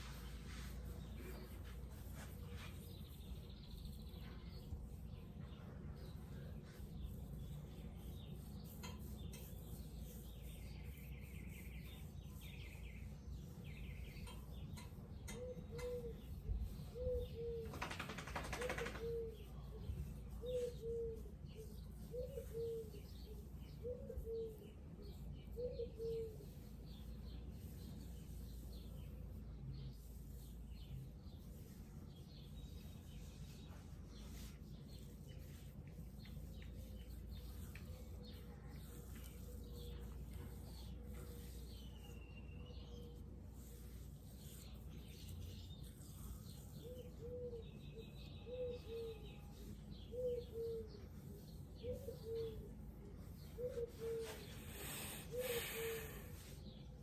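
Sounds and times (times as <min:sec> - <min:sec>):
bird calling: 0:53.6 - 0:56.3.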